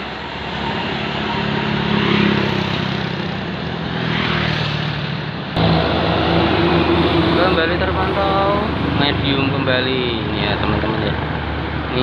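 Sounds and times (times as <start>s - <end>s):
bus diesel engine running: 0.0s - 12.0s.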